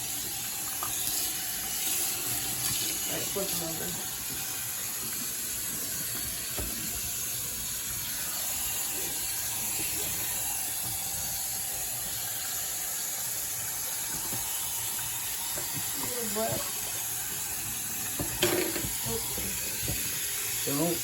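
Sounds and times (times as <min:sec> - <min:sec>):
tap running into sink: 0:04.2 - 0:07.4, 0:14.0 - 0:20.6.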